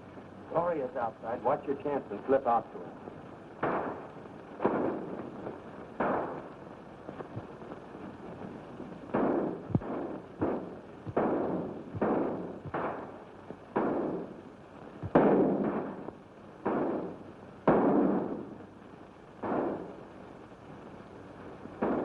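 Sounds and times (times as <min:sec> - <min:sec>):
gunshots with short echo: 0:03.6 - 0:05.1, 0:06.0 - 0:06.5, 0:09.1 - 0:14.3, 0:15.1 - 0:18.6, 0:19.4 - 0:19.9, 0:21.8 - 0:22.0.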